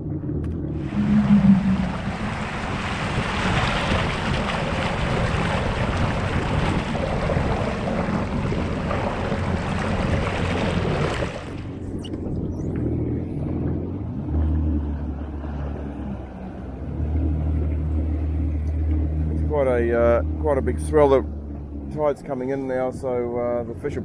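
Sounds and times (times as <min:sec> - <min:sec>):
rushing wind: 0:00.0 - 0:14.2
jet ski engine drone: 0:00.0 - 0:24.0
rushing water: 0:00.7 - 0:24.0.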